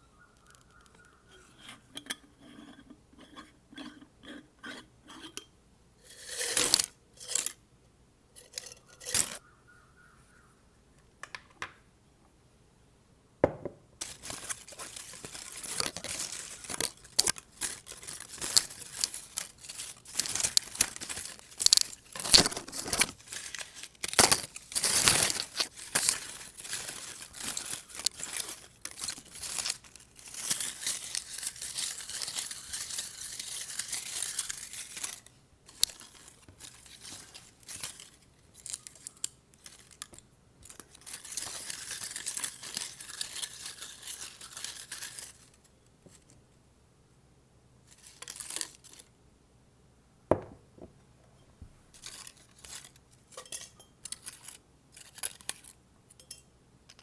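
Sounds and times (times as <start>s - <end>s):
paper rustling and crinkling: 14.0s - 46.4s, 47.9s - 49.1s.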